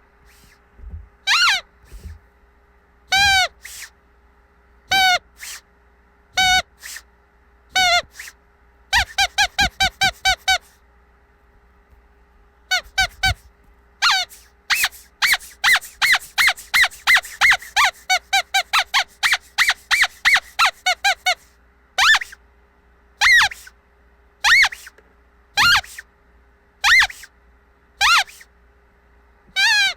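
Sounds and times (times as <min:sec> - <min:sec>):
squeaky dog toy squeaks: 0:01.2 - 0:02.1, 0:03.1 - 0:03.9, 0:04.9 - 0:05.6, 0:06.4 - 0:07.0, 0:07.7 - 0:10.8, 0:12.7 - 0:13.4, 0:14.0 - 0:22.4, 0:23.2 - 0:23.7, 0:24.4 - 0:25.0, 0:25.6 - 0:26.0, 0:26.8 - 0:27.3, 0:28.0 - 0:28.5, 0:29.5 - 0:29.9.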